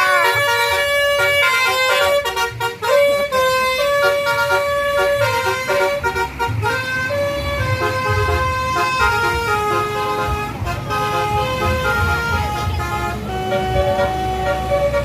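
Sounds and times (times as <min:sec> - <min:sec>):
bus engine rumbling: 0:00.0 - 0:15.0
bus horn playing a tune: 0:00.0 - 0:15.0.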